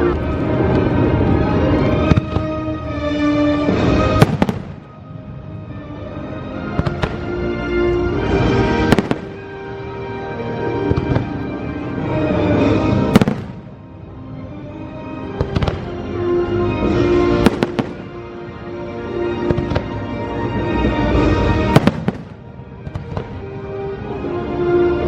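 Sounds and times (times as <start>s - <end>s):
orchestral music: 0.0s - 25.0s
firework bursts: 3.7s - 5.0s, 8.8s - 9.7s, 12.6s - 13.9s, 17.3s - 18.3s, 21.6s - 23.5s.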